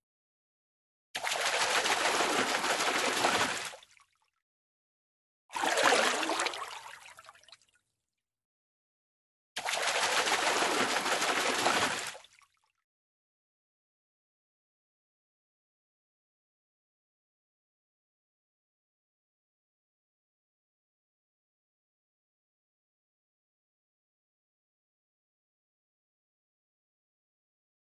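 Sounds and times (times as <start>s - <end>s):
fish thrashing in water: 1.2s - 3.9s, 5.6s - 6.8s, 9.6s - 12.3s.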